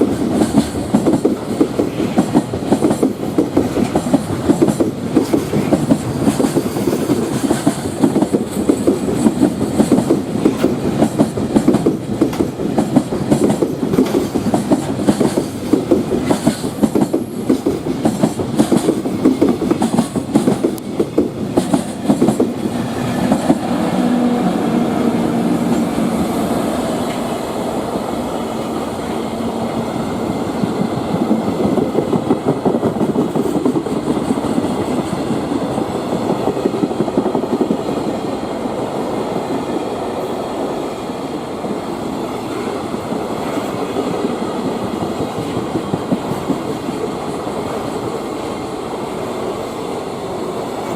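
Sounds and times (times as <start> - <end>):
train wheels clattering over rail joints: 0.0 - 23.7, 30.3 - 38.0, 42.4 - 48.2
train rumble: 0.0 - 50.9.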